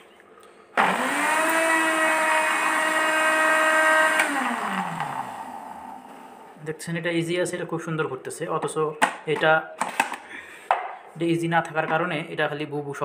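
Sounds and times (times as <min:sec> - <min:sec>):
blender motor whining: 0:00.8 - 0:06.6.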